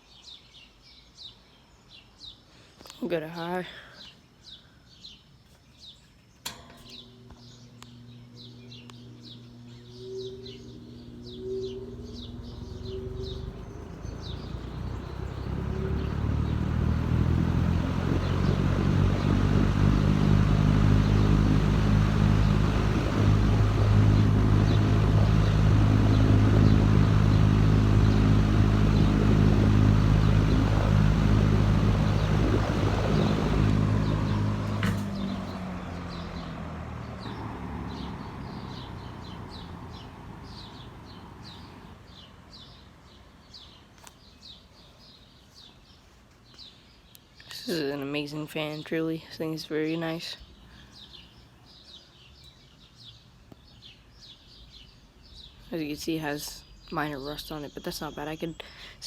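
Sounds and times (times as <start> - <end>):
birds chirping faintly: 0.0 - 59.0
fan switch click: 6.4 - 12.6, 32.5 - 35.5
box fan motor and air rush: 6.4 - 42.0.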